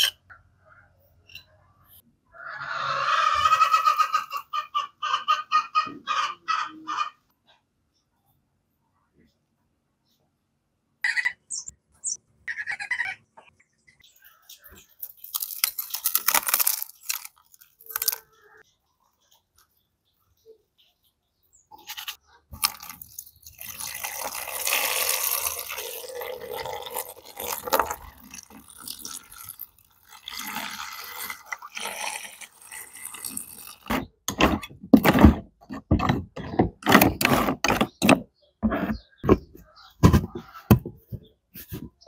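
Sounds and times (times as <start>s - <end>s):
water splashing and trickling: 22.6s - 34.0s
sharp knocks and clicks: 33.9s - 41.3s.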